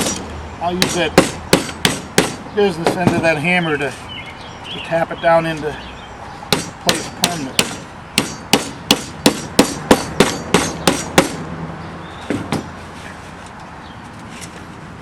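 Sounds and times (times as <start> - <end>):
hammer tapping metal: 0.8 - 2.4, 6.5 - 11.4.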